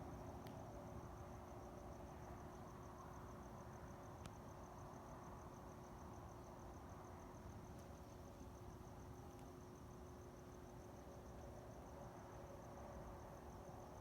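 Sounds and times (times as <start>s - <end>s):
cricket chirping: 0.0s - 14.0s
faint steady hum: 0.0s - 14.0s
faint click: 4.2s - 4.4s.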